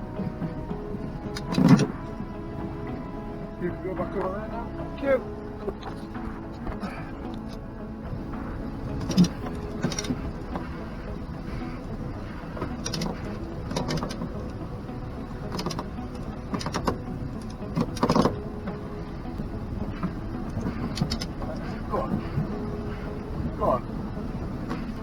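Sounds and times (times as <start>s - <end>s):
boat engine running: 0.0s - 25.0s
rigging knocks and clicks: 8.9s - 22.7s.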